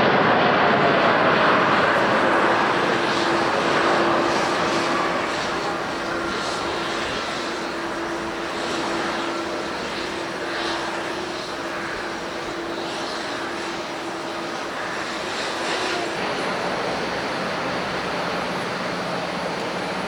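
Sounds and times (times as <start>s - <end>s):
jet engines running: 0.0s - 20.0s.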